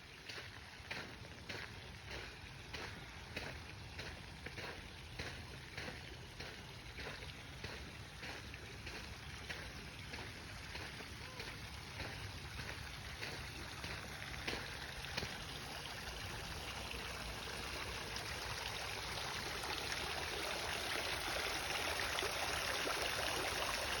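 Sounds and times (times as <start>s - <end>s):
running water trickling: 0.0s - 24.0s.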